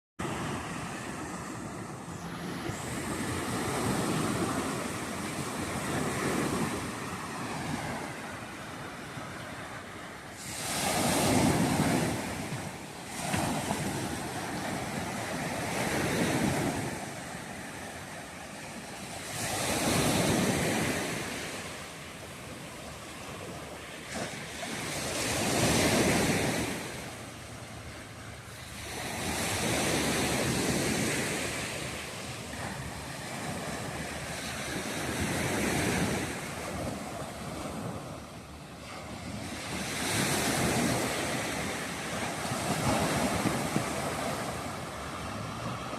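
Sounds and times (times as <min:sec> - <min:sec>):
surf breaking on a beach: 0:00.2 - 0:45.9.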